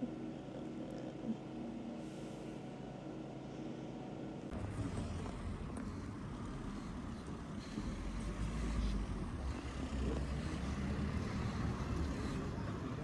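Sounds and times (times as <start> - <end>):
road traffic rumble: 4.5 - 13.0.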